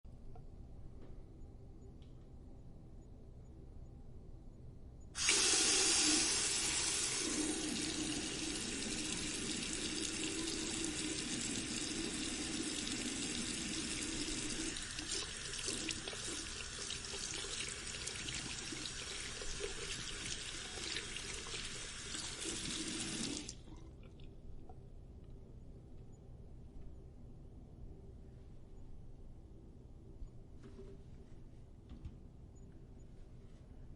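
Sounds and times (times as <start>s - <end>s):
tap water running into sink: 5.2s - 23.6s.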